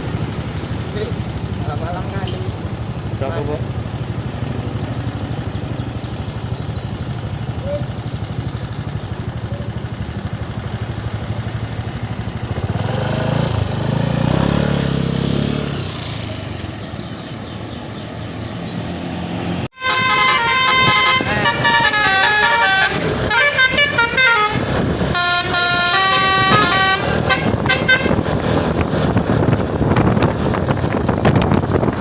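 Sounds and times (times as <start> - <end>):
engine idling: 0.0 - 14.4, 19.8 - 32.0
heavy vehicle passing: 0.0 - 32.0.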